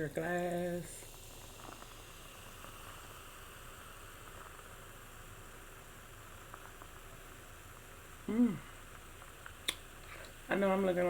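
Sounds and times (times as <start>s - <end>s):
faint steady hiss: 0.0s - 11.0s
faint small clicks: 9.4s - 10.4s.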